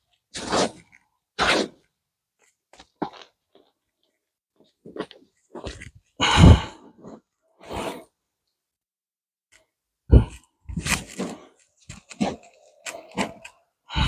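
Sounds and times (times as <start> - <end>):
crunching scrapes in soil: 0.3 - 1.8, 10.7 - 13.5.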